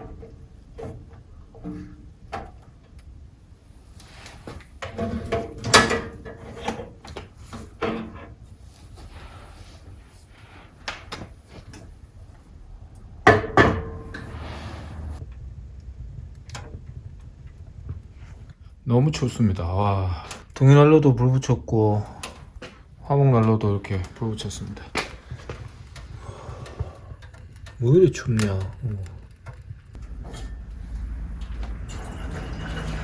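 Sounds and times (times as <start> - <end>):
wood stove knocks and clatter: 0.0 - 3.1, 4.1 - 8.7, 13.0 - 14.4, 15.2 - 18.6, 22.1 - 33.0.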